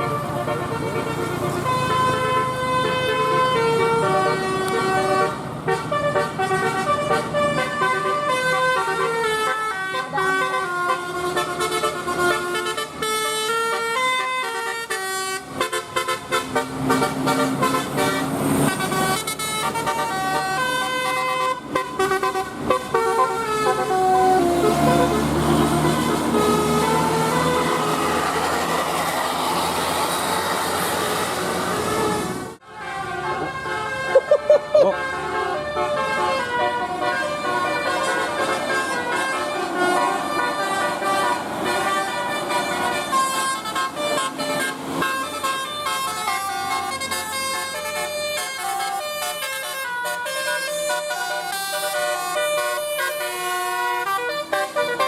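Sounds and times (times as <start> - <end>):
multi-tone bus horn melody: 0.0 - 55.0.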